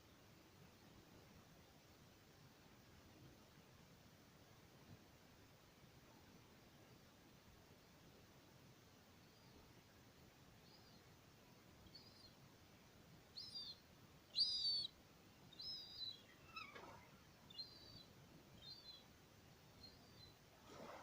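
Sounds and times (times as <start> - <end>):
bird high calls: 14.4 - 14.9, 15.5 - 19.0.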